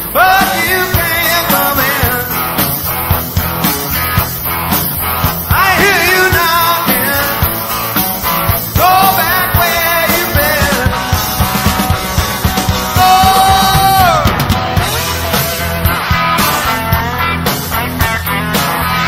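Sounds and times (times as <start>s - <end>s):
drums keeping a steady beat: 0.0s - 19.0s
live rock band playing: 0.0s - 19.0s
lead guitar line bending pitch: 9.7s - 19.0s.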